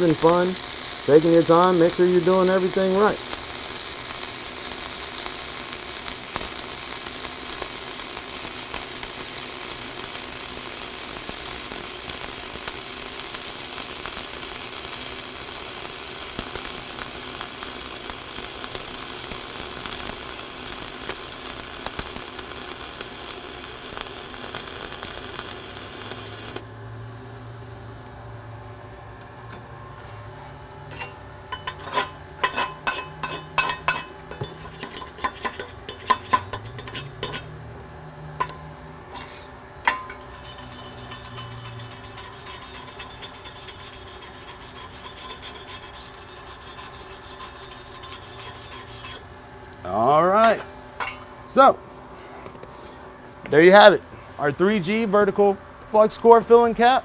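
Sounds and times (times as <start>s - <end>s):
welding arc crackling: 0.0s - 26.7s, 38.4s - 49.3s.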